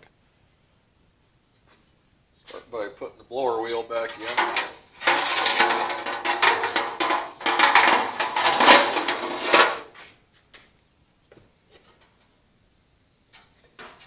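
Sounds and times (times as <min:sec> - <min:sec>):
blower wheel scraping metal housing: 0:03.9 - 0:09.9.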